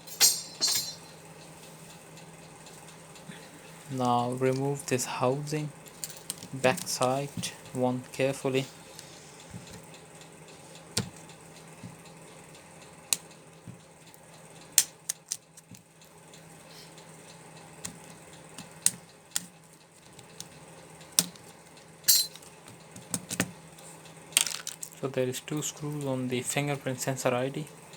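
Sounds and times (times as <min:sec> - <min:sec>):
small tools clicking and clinking: 0:00.0 - 0:01.2, 0:05.9 - 0:07.6, 0:14.8 - 0:15.8, 0:17.8 - 0:23.5, 0:24.4 - 0:25.0
faint steady hum: 0:00.0 - 0:27.9.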